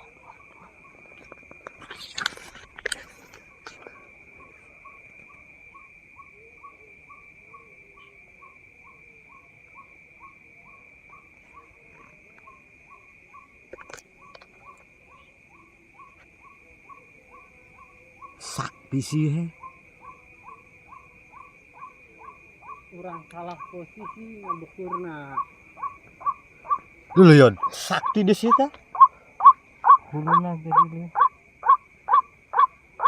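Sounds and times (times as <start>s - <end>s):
high insect drone: 0.0s - 33.0s.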